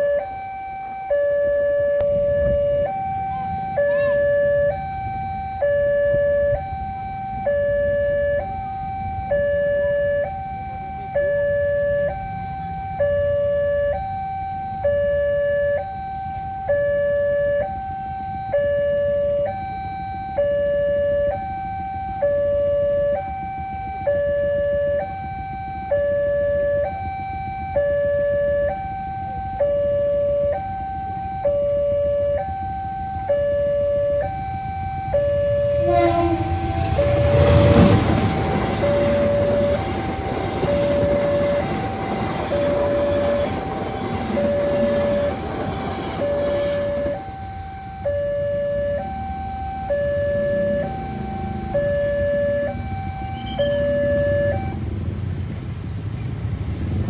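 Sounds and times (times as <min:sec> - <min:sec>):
two-tone warning siren: 0:00.0 - 0:55.6.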